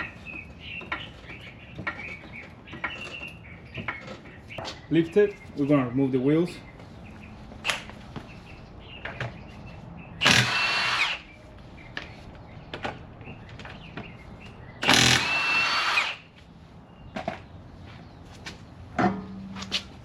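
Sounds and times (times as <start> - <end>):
impact wrench whining: 10.2 - 11.2, 14.8 - 16.2.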